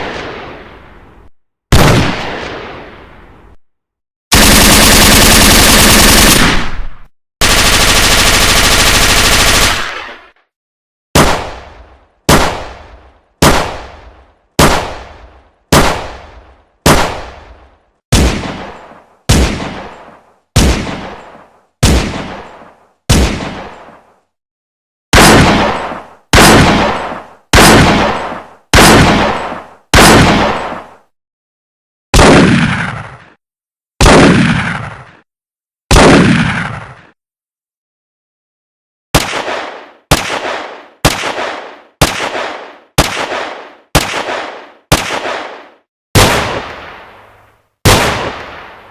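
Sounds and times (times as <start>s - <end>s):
single gunshots with echo: 1.7s - 3.0s, 11.2s - 17.5s, 25.2s - 31.0s, 32.2s - 33.3s, 34.0s - 35.2s, 35.9s - 37.1s, 39.2s - 47.2s, 47.8s - 48.9s
automatic gunfire bursts: 4.3s - 6.7s, 7.4s - 10.1s.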